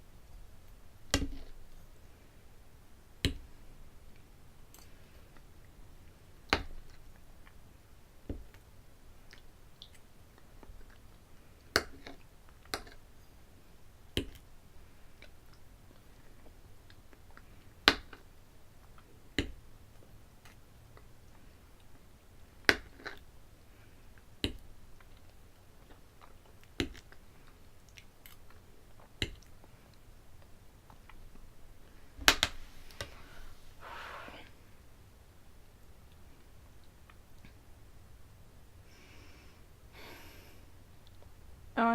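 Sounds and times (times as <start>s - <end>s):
chewing: 25.0s - 30.0s
short breathy noise: 33.1s - 34.6s.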